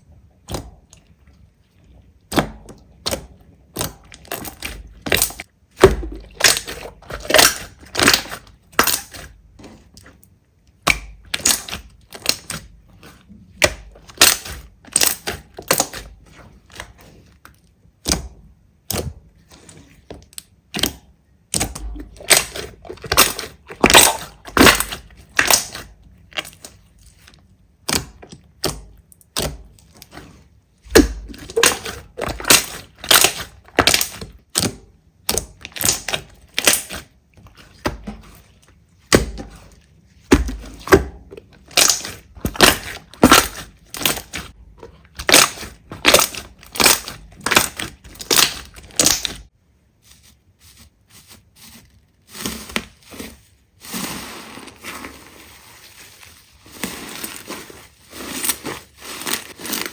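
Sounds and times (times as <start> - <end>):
slime squished by hand: 2.3 - 10.2, 10.8 - 59.9
crackling slime pops: 35.3 - 37.0, 45.2 - 49.5.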